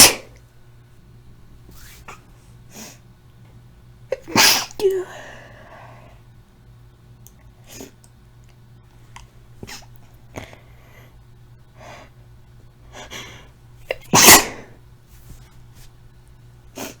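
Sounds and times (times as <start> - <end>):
woman sneezing loudly: 0.0 - 0.3, 4.1 - 5.3, 13.9 - 14.8
woman breathing and sniffing: 1.7 - 3.0, 9.6 - 12.2, 12.9 - 13.6, 16.7 - 17.0.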